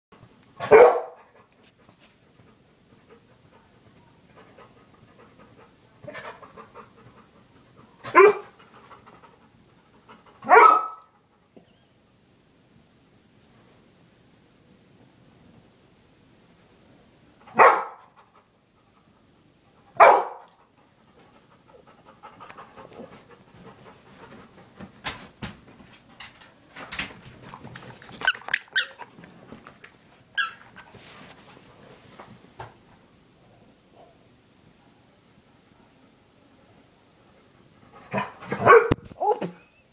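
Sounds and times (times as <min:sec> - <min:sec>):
dog barking: 0:00.6 - 0:01.3, 0:08.0 - 0:08.5, 0:10.4 - 0:11.1, 0:17.5 - 0:18.1, 0:20.0 - 0:20.5, 0:38.1 - 0:39.5
rustling: 0:22.4 - 0:32.6
toy squeaking: 0:28.2 - 0:29.0, 0:30.4 - 0:30.6.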